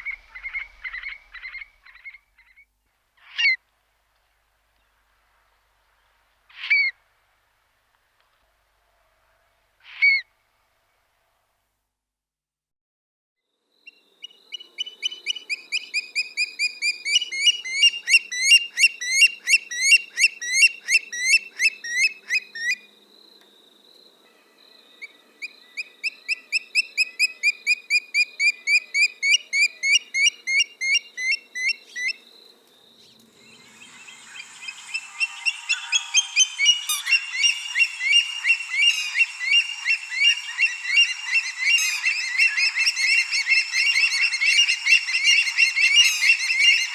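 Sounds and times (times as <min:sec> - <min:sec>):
steady hiss: 0:32.2 - 0:46.9
rapid repeated animal chirps: 0:34.3 - 0:46.9.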